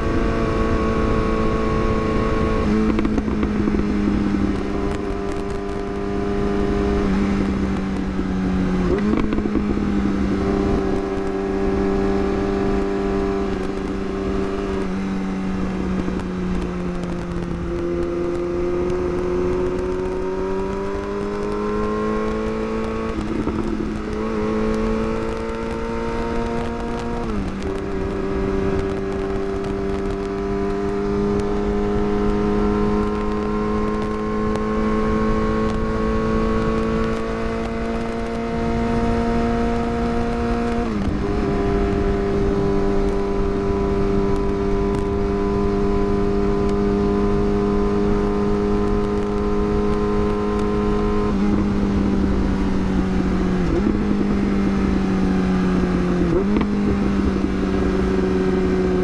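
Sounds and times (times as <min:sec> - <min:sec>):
motorcycle engine revving: 0:00.0 - 0:59.0
wind noise: 0:00.0 - 0:59.0.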